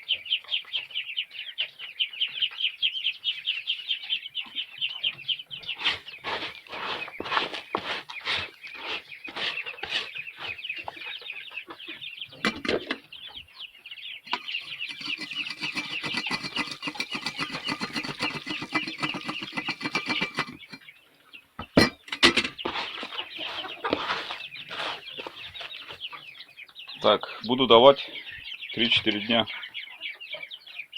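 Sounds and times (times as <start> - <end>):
chickens clucking: 21.6 - 28.2.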